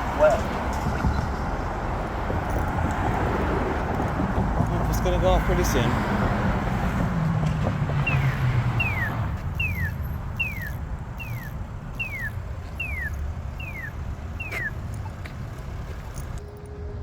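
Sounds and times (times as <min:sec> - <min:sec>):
traffic rumble: 0:00.0 - 0:17.0
pedestrian signal chirp: 0:08.0 - 0:16.9.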